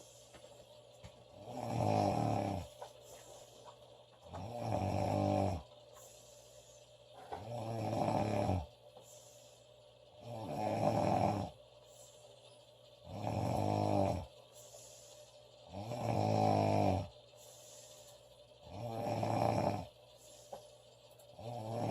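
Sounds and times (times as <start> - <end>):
quiet breaths: 0.0 - 21.9
woman snoring loudly: 1.3 - 2.7, 4.3 - 5.7, 7.4 - 8.7, 10.2 - 11.6, 13.0 - 14.3, 15.7 - 17.1, 18.6 - 19.9, 21.4 - 21.9.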